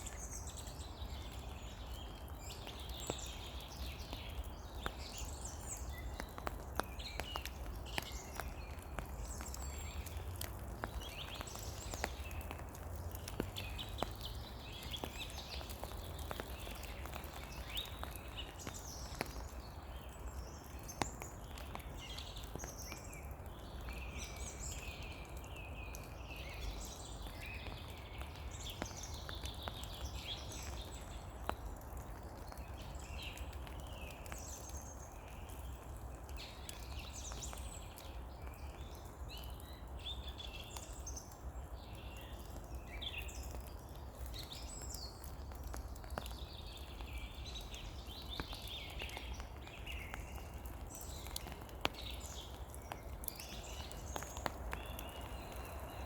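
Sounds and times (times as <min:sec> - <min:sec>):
steady rain: 0:00.0 - 0:56.0
water drip taps: 0:02.0 - 0:19.6.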